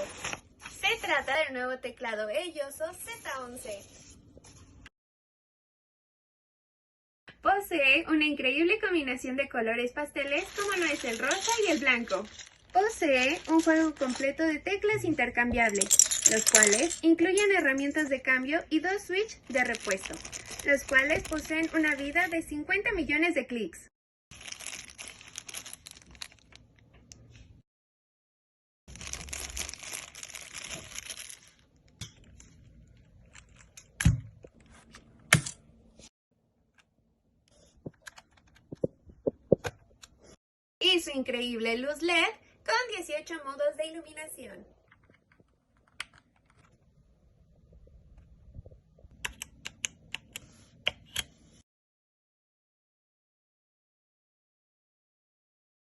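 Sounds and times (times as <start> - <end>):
packaging crinkling: 10.4 - 14.4, 19.4 - 22.3, 24.3 - 26.8, 28.9 - 33.8.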